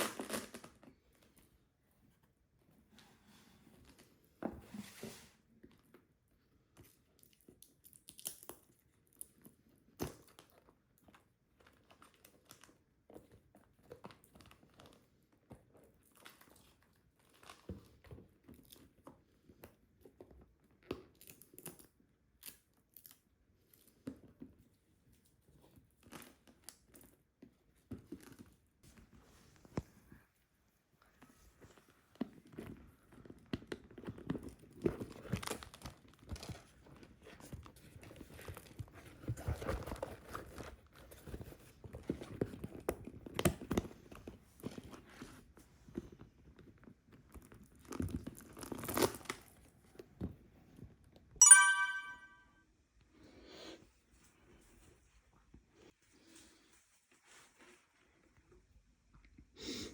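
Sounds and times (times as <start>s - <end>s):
wrapping crinkling and tearing: 47.3s - 49.7s.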